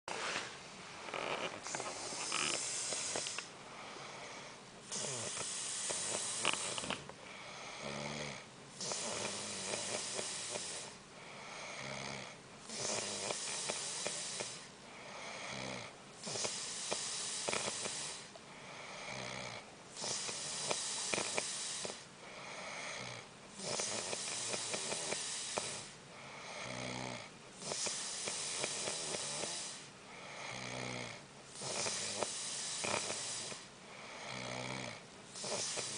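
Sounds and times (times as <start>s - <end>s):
rattling snore: 1.0s - 11.0s, 11.6s - 18.3s, 18.9s - 35.9s
hissing breath: 1.2s - 7.9s.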